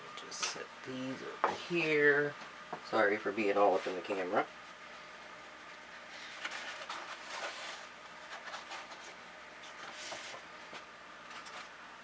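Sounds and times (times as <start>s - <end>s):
faint steady hum: 0.0s - 12.0s
eggs handled with rustles and clicks: 5.6s - 11.8s.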